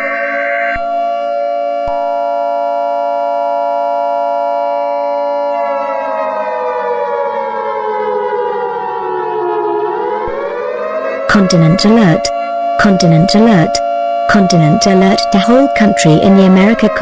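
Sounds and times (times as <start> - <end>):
civil defense siren winding: 0.0 - 17.0.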